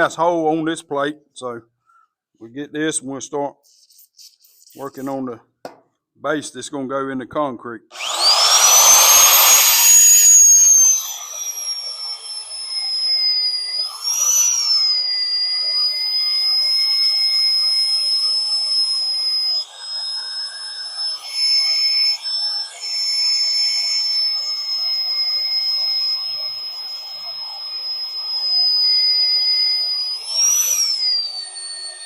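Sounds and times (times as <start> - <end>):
drill bit squealing through steel: 8.0 - 32.0.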